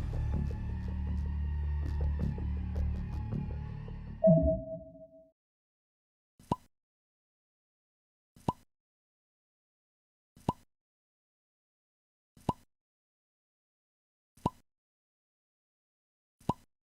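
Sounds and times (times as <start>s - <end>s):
electronic bloop: 4.2s - 5.1s.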